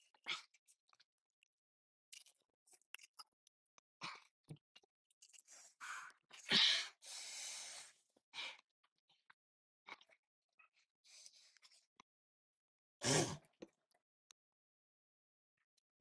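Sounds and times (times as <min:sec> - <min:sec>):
person sniffing and breathing: 0:05.5 - 0:08.0.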